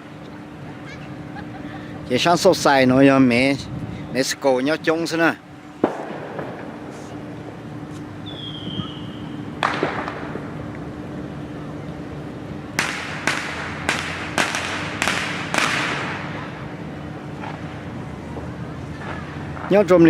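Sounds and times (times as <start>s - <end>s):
firework bangs: 5.8s - 7.3s, 8.2s - 10.6s, 12.8s - 16.7s
firework whistle: 8.2s - 10.3s.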